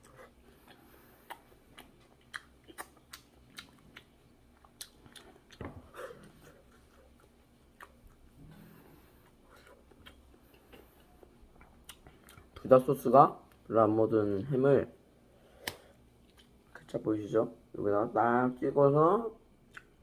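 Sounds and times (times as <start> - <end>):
person chewing food: 0.0 - 12.7, 15.6 - 16.9, 19.6 - 20.0.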